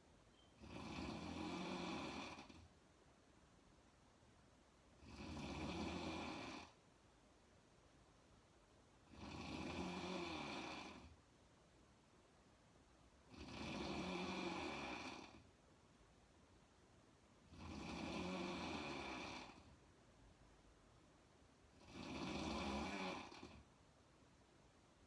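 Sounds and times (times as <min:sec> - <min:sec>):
woman snoring: 0:00.6 - 0:02.7, 0:05.0 - 0:06.8, 0:09.0 - 0:11.2, 0:13.3 - 0:15.5, 0:17.5 - 0:19.7, 0:21.7 - 0:23.7.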